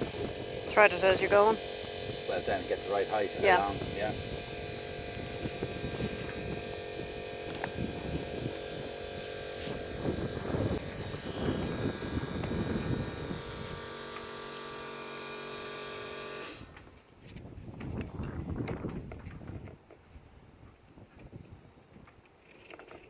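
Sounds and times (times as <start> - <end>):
mechanical hum: 0.0 - 16.9.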